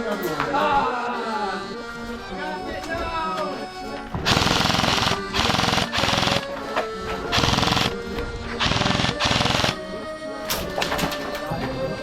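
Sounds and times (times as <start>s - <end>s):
background music: 0.0s - 12.0s
airsoft gun rapid firing: 4.2s - 6.6s, 7.3s - 9.8s.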